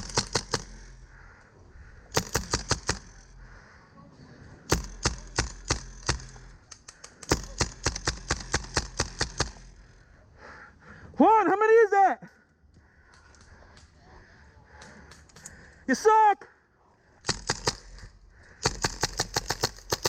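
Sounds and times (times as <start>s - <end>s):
airsoft guns firing: 0.0s - 1.0s, 2.0s - 3.4s, 4.7s - 9.8s, 17.2s - 20.0s.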